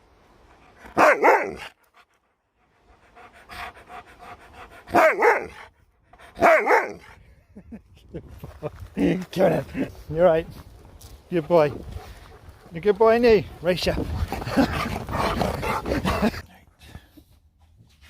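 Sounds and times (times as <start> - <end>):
dog panting: 1.8 - 6.4, 11.3 - 16.4.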